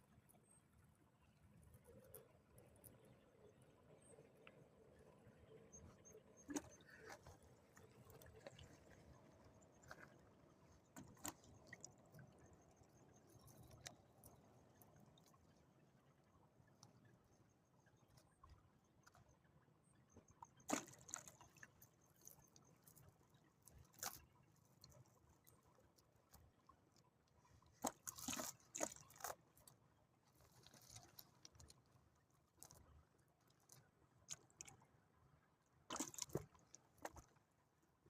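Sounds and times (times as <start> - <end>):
water splashes: 6.3 - 17.2, 20.4 - 29.7, 35.8 - 37.6.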